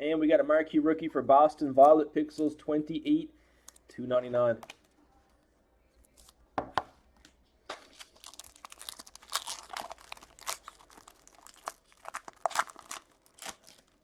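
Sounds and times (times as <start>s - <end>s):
wrapper crinkling: 7.9s - 14.0s.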